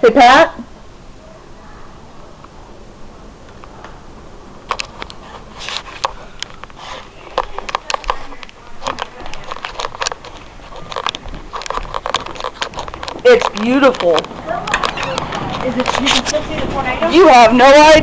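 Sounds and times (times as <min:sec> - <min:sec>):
low rumble of storm wind: 0:00.0 - 0:18.0
hailstones striking hard surfaces: 0:09.0 - 0:18.0.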